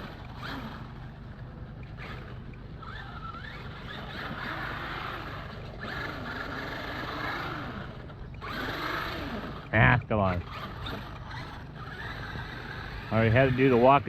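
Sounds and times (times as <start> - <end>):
electric motor whining: 0.0 - 14.0.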